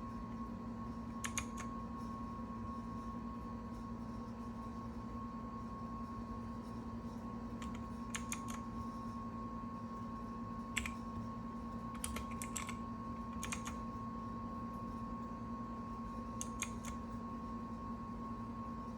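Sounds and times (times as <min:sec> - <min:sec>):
steady electrical hum: 0:00.0 - 0:18.9
mechanical keyboard keys clicking: 0:01.2 - 0:01.7, 0:07.6 - 0:08.6, 0:10.8 - 0:11.0, 0:12.0 - 0:13.8, 0:16.4 - 0:17.0.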